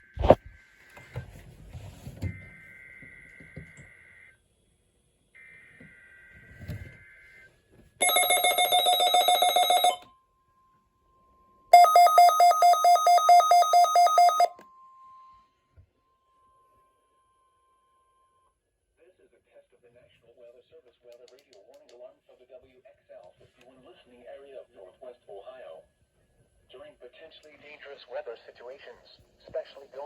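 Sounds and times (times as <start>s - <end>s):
faint steady warning tone: 5.4s - 18.5s
rapid alarm beeping: 8.0s - 10.0s, 11.8s - 14.5s.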